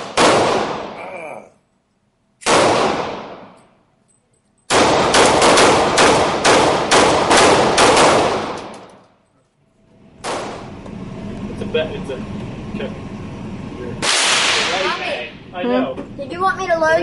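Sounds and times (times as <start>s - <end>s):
gunshots: 0.0s - 1.0s, 2.4s - 3.6s, 4.7s - 9.0s, 10.2s - 10.7s, 14.0s - 15.0s.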